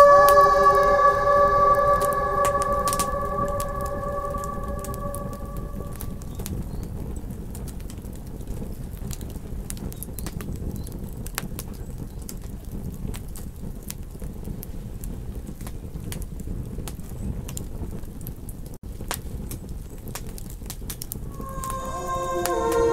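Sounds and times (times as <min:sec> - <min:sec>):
wolf howling: 0:00.0 - 0:06.3, 0:21.3 - 0:22.9
low rumble: 0:00.0 - 0:06.4, 0:21.3 - 0:22.9
campfire crackling and popping: 0:06.2 - 0:22.8.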